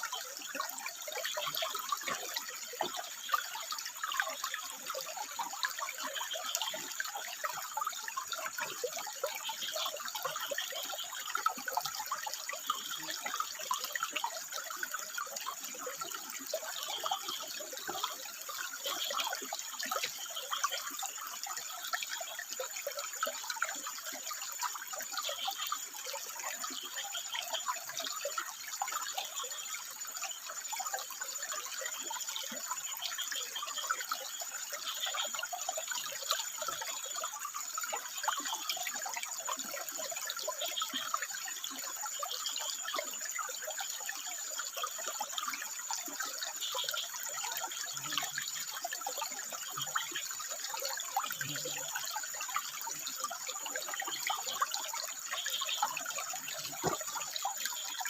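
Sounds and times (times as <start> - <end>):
frogs calling: 0.0 - 58.0
water splashing over rocks: 43.1 - 58.0.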